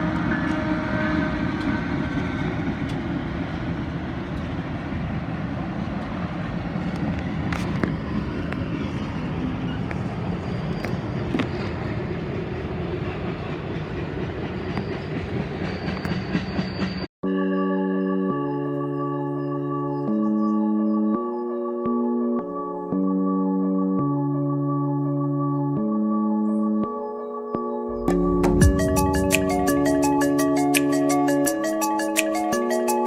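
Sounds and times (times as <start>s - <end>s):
moving vehicle rumble: 0.0s - 16.0s.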